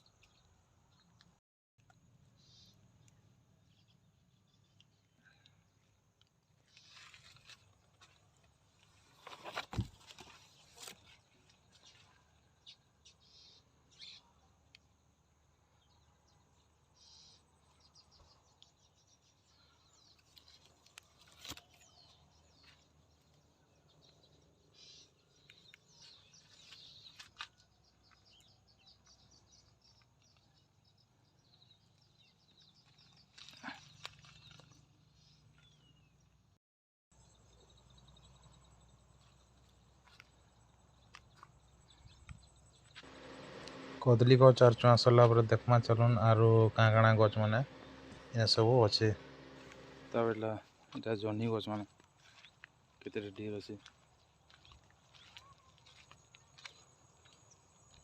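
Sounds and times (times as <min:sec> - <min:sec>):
faint bird chirps: 0:01.9 - 0:06.0, 0:10.6 - 0:36.1, 0:54.5 - 0:58.0.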